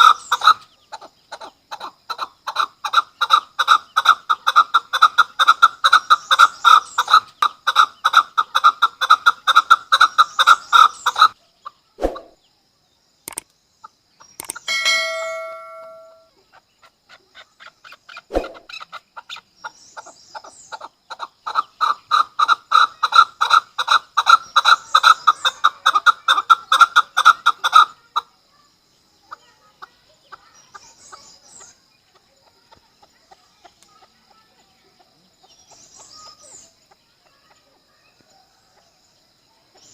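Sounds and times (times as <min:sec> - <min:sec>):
partridge clucking call: 0:00.0 - 0:12.4, 0:13.3 - 0:13.5, 0:14.2 - 0:28.3
short ringing tone: 0:14.7 - 0:16.3.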